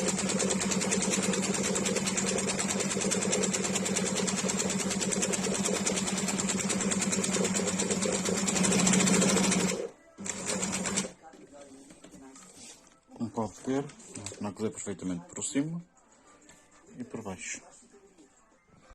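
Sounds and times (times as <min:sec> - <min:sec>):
sewing machine running: 0:00.0 - 0:11.1.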